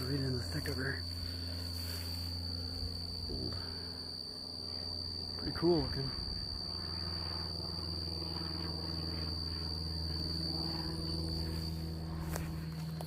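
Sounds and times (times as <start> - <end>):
insects trilling: 0.0 - 13.0
low steady rumble: 0.0 - 13.0.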